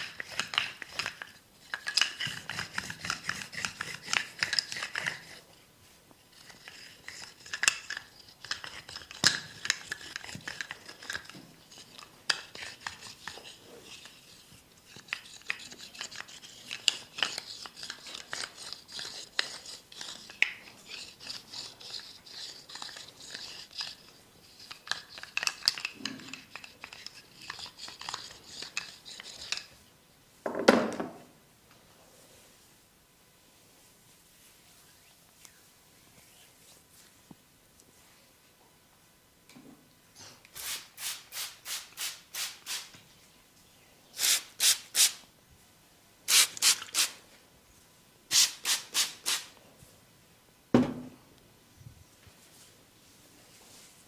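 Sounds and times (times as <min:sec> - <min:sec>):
thump: 0:50.7 - 0:51.1.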